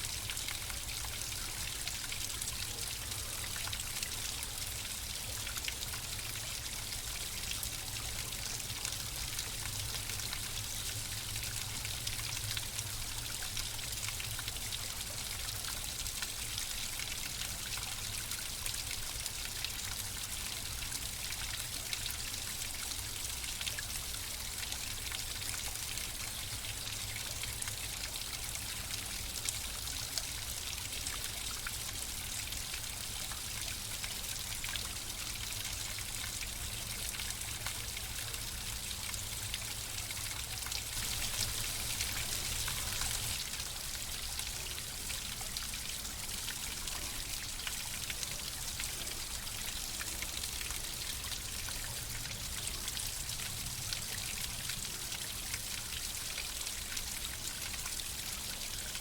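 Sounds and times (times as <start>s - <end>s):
water trickling and splashing: 0.0s - 59.0s.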